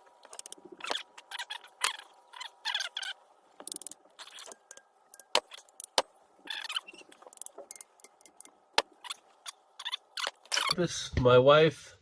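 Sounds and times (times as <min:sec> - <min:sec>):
metal parts and tools clinking: 0:03.6 - 0:09.2.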